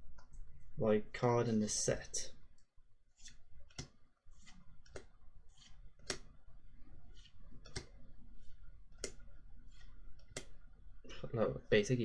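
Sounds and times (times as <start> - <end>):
trading cards clicking and swishing: 3.2 - 6.4, 7.0 - 10.6.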